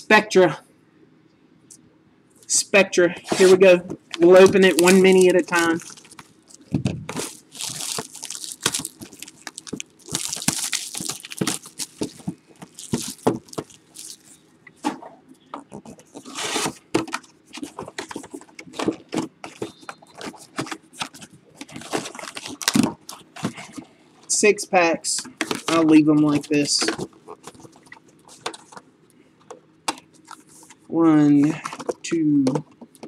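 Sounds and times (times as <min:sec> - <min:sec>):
cardboard scraping: 0:03.2 - 0:23.8
card packs clicking: 0:03.4 - 0:14.4
plastic wrap crinkling and tearing: 0:04.3 - 0:14.4, 0:19.6 - 0:23.7.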